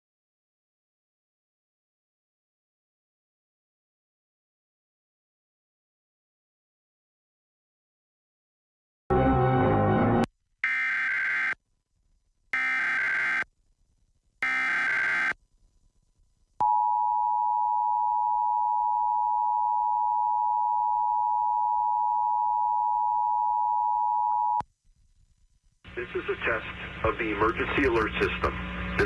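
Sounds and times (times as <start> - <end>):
data tone bursts: 10.6 - 11.6, 12.6 - 13.4, 14.4 - 15.4
two-tone attention signal: 12.6 - 13.4, 14.4 - 15.3.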